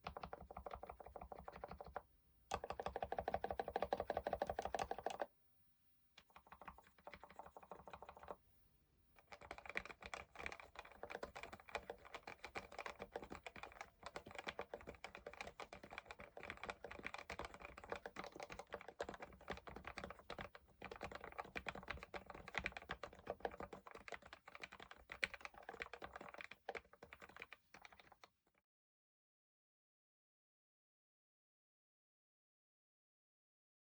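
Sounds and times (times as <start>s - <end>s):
mechanical keyboard typing: 0.0s - 5.3s, 6.2s - 8.4s, 9.2s - 28.3s.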